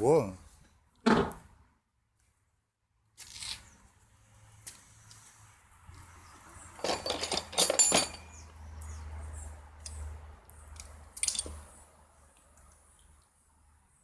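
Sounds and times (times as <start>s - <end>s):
metal tools clinking: 6.8s - 8.4s, 11.2s - 11.6s.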